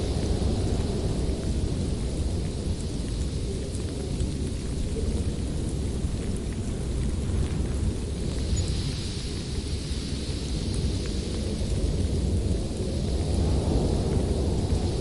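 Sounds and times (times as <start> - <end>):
faint scattered ticks: 0.0 - 15.0
low storm rumble with hiss: 0.0 - 15.0.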